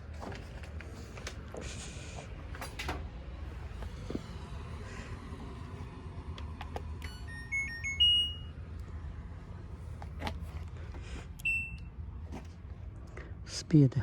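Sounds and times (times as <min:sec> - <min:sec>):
steady low hum: 0:00.0 - 0:14.0
electronic chime: 0:07.0 - 0:08.6
short beep: 0:07.0 - 0:08.6, 0:11.4 - 0:11.9.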